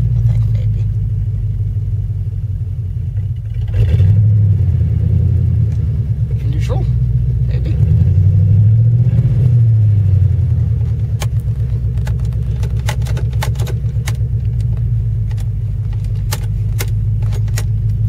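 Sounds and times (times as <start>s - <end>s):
car engine idling: 0.0s - 18.0s
sharp clicks: 11.2s - 18.0s.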